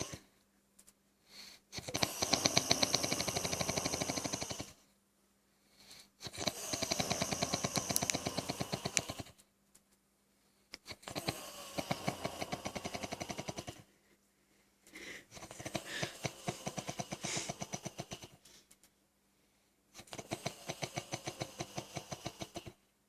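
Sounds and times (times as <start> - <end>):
heavy snoring with rattle: 0.0 - 0.3, 1.8 - 4.8, 6.2 - 9.4, 10.9 - 13.8, 15.4 - 18.4, 20.0 - 22.8.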